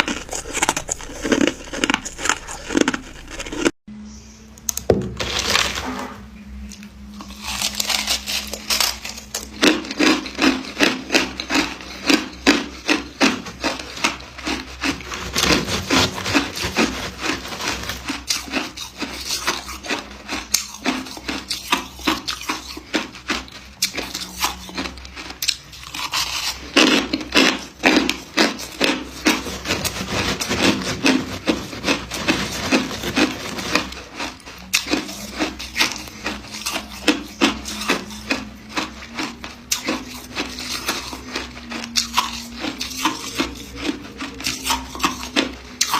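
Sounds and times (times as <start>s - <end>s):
ice being chewed: 0.0s - 3.8s, 6.6s - 45.9s.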